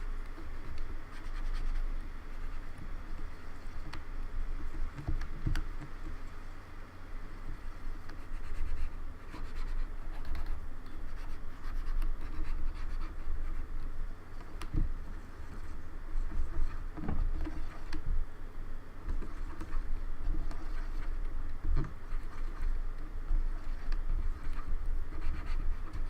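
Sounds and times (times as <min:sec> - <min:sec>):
scratchy rubbing on keyboard: 0:00.4 - 0:02.8, 0:08.1 - 0:13.8, 0:14.4 - 0:18.0, 0:19.1 - 0:22.8, 0:23.4 - 0:26.0.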